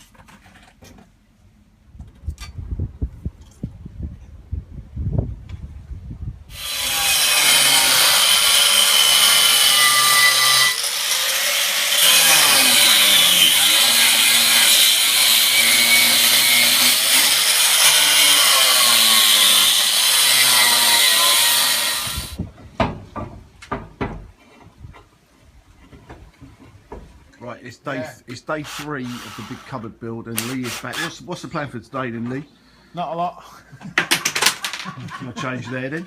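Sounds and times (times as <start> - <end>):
power saw cutting: 6.5 - 22.4, 28.6 - 31.4.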